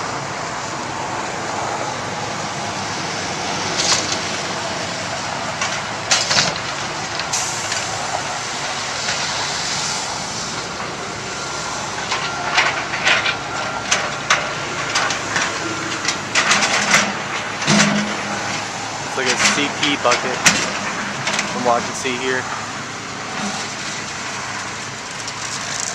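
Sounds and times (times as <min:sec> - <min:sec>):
heavy machinery engine din: 0:00.0 - 0:25.9
concrete chunks striking metal: 0:16.0 - 0:22.2.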